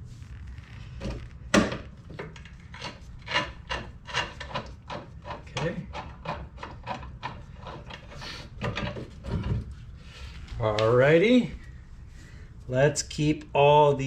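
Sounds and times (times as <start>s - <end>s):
metal scraping and rubbing: 2.4s - 10.0s.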